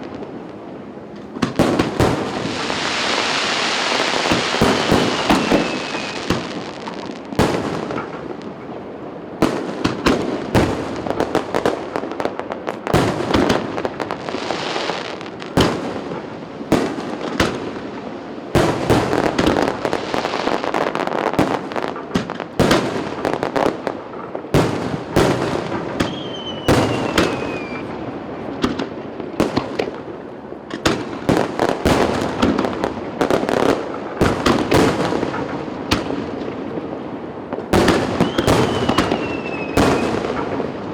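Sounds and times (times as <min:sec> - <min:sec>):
fireworks bangs: 0:00.0 - 0:40.9
fireworks crackling: 0:00.0 - 0:40.9
falling firework whistle: 0:02.3 - 0:06.8, 0:26.0 - 0:28.0, 0:38.0 - 0:40.3.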